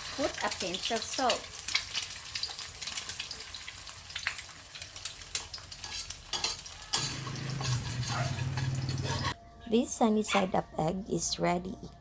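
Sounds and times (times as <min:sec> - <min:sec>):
egg sizzling in oil: 0:00.0 - 0:09.4.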